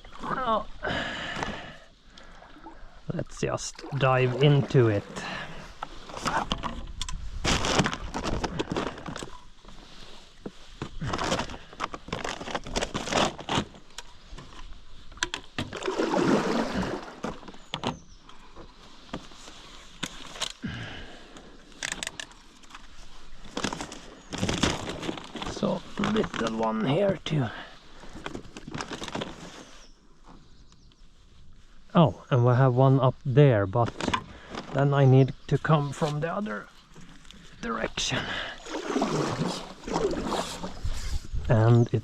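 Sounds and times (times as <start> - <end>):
twigs and branches rustling: 0.0 - 31.9, 33.6 - 41.9.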